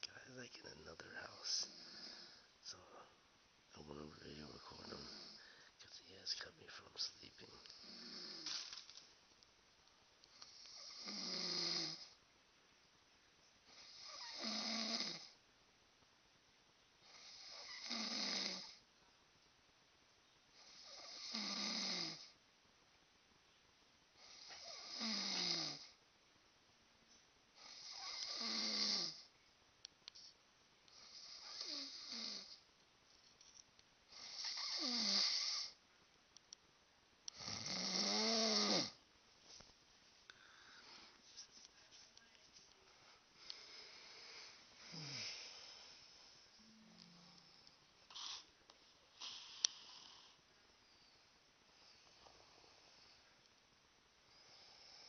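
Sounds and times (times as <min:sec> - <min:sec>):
man snoring: 0:01.3 - 0:02.4, 0:04.2 - 0:05.6, 0:07.6 - 0:08.6, 0:10.4 - 0:12.2, 0:13.7 - 0:15.4, 0:17.0 - 0:18.8, 0:20.6 - 0:22.4, 0:24.2 - 0:26.0, 0:27.6 - 0:29.3, 0:31.0 - 0:32.6, 0:34.1 - 0:35.8, 0:37.3 - 0:39.0, 0:43.5 - 0:45.8.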